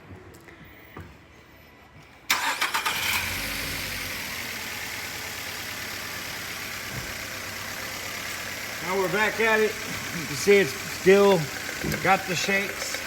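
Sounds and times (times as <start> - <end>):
starter cranking engine: 2.3 - 4.7, 8.5 - 13.0
misfiring car engine idling: 2.3 - 13.0.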